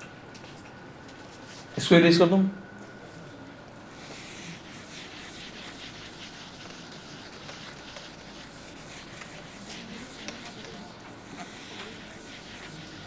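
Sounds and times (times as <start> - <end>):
board eraser wiping: 3.9 - 13.0.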